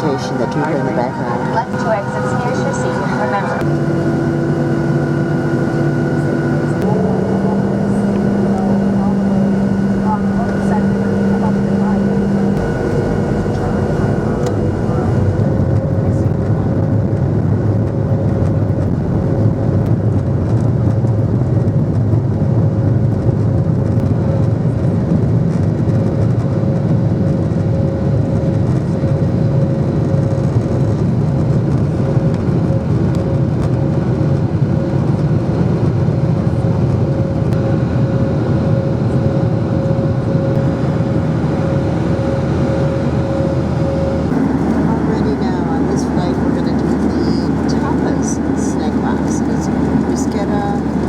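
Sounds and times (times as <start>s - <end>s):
thin whine: 0.0s - 16.4s
engine and airflow rumble: 0.0s - 51.0s.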